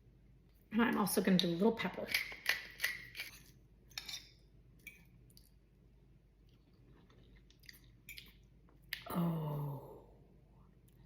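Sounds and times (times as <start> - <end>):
pepper grinder grinding clicks: 2.1 - 3.3.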